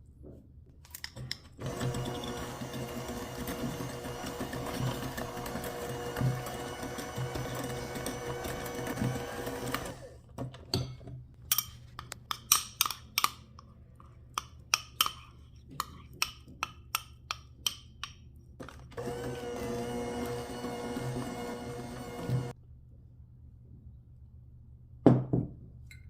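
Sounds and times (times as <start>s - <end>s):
electric hand mixer humming: 1.6s - 10.2s, 19.0s - 22.6s.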